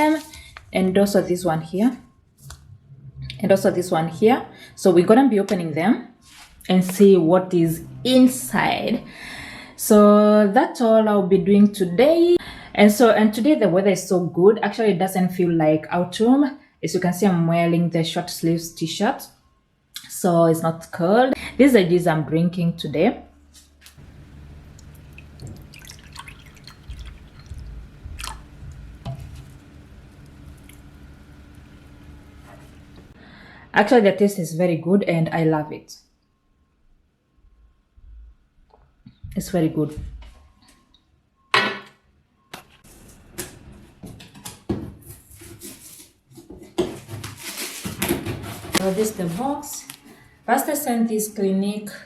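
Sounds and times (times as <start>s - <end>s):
person sipping and swallowing: 24.3s - 30.9s.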